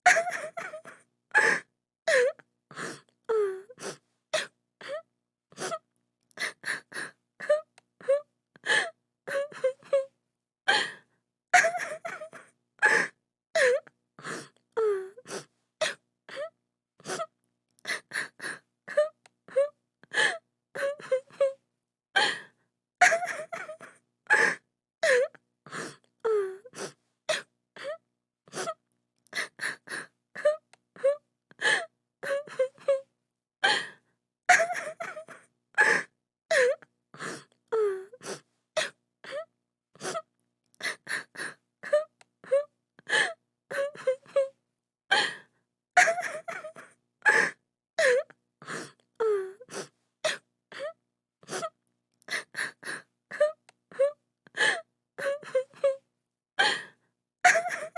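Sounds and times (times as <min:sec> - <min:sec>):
woman sobbing and wailing: 0:00.0 - 0:02.4, 0:11.6 - 0:13.8, 0:23.0 - 0:25.3, 0:29.4 - 0:33.0, 0:34.5 - 0:36.8, 0:40.9 - 0:45.3, 0:46.0 - 0:48.3, 0:52.4 - 0:56.0, 0:57.5 - 0:57.9.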